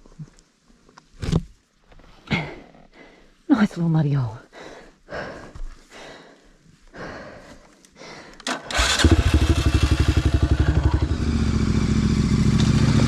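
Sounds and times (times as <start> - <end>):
motorcycle engine starting and idling: 8.4 - 13.0.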